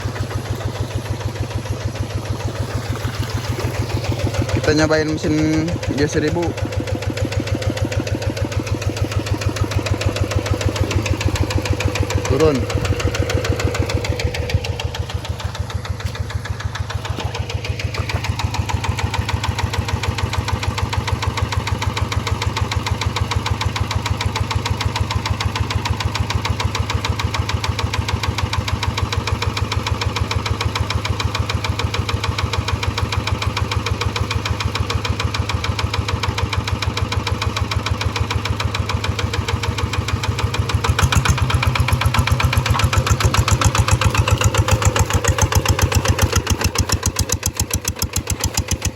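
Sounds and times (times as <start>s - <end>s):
hand tractor engine thumping: 0.0s - 19.5s, 36.6s - 48.9s.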